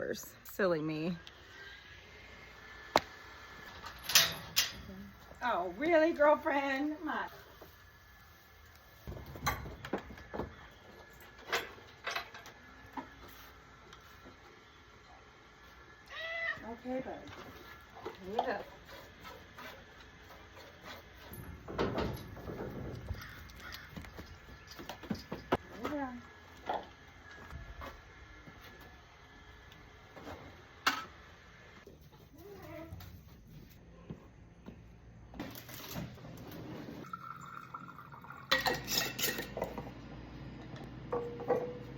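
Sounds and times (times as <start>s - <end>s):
metal pails clanking: 41.1s - 41.9s.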